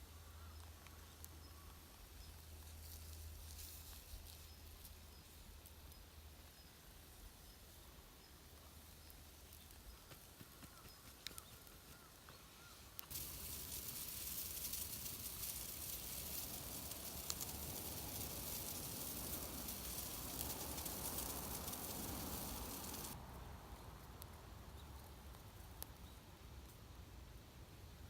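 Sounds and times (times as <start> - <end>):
campfire hissing and crackling: 0.6 - 10.2, 11.3 - 23.2.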